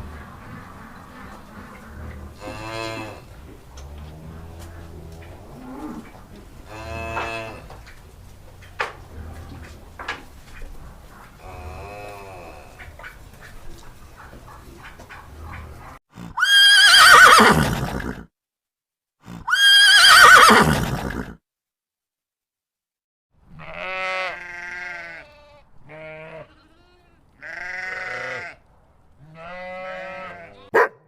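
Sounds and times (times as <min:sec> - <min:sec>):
horse whinnying: 0:16.2 - 0:18.3, 0:19.3 - 0:21.4
goat bleating: 0:23.5 - 0:28.6, 0:29.2 - 0:30.8.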